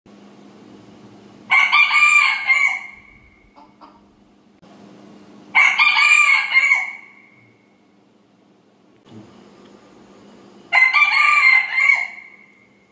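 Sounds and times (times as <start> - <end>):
rooster crowing: 1.5 - 3.1, 5.6 - 7.4, 10.7 - 12.5.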